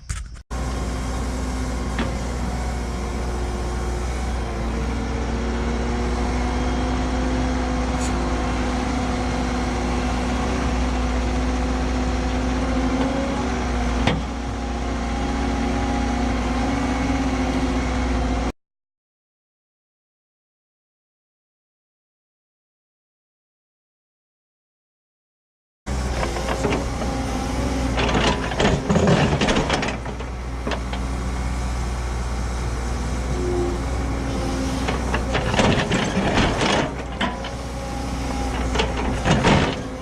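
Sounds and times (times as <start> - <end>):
excavator diesel engine running: 0.5 - 18.5, 25.9 - 40.0.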